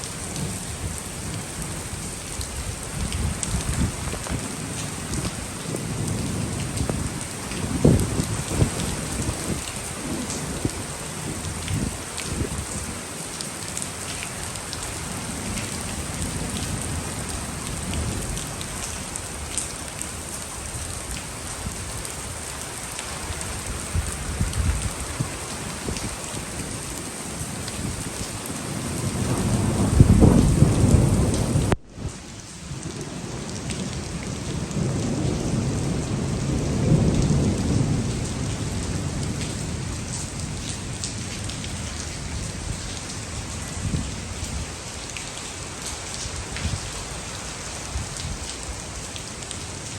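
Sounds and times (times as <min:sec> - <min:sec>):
heavy rain pouring: 0:00.0 - 0:49.9
thunder rumbling: 0:00.4 - 0:12.8, 0:27.6 - 0:44.7.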